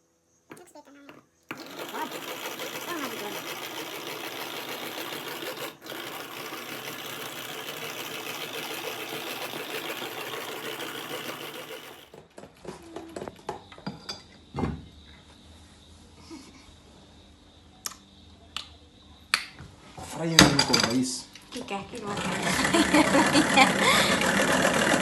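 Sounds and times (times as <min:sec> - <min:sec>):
electric hand mixer running: 0:01.5 - 0:12.2, 0:22.1 - 0:25.0.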